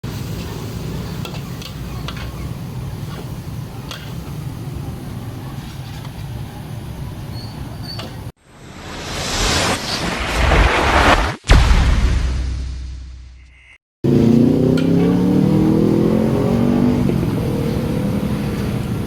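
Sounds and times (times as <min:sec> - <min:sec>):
traffic rumble: 0:00.0 - 0:11.1.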